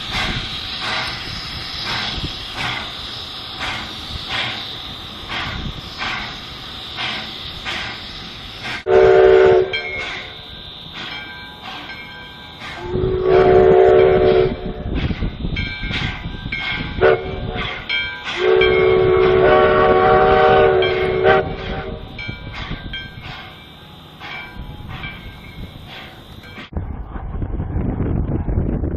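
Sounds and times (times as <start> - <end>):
train running: 0.0 - 28.9
locomotive whistle blasts: 8.8 - 11.0, 12.5 - 15.0, 17.0 - 22.2.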